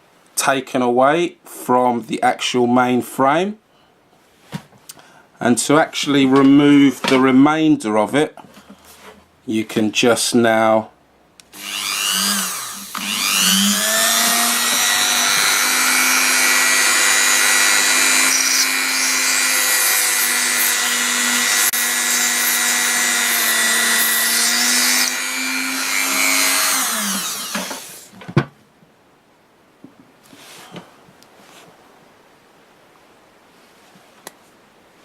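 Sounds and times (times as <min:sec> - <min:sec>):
drill click: 0:11.4 - 0:28.1
small electric drill spinning: 0:11.5 - 0:28.1.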